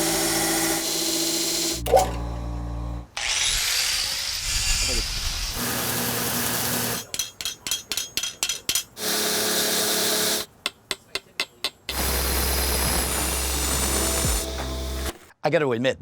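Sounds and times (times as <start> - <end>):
belt grinder: 0.0 - 1.8, 3.1 - 10.8, 11.7 - 15.2
low machine hum: 1.8 - 3.1
hammer striking steel anvil: 7.1 - 9.0, 10.6 - 12.0.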